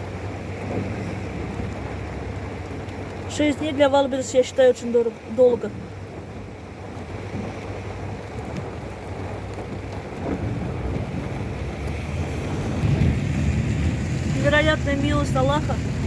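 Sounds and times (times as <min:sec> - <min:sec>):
heavy rain on a car: 0:00.0 - 0:16.0
low rumble: 0:05.6 - 0:16.0.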